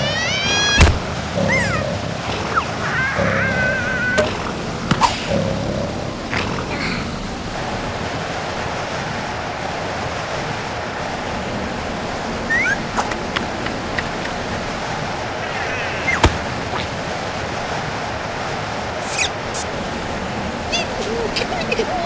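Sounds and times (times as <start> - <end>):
high wavering squeaky call: 12.5 - 13.2.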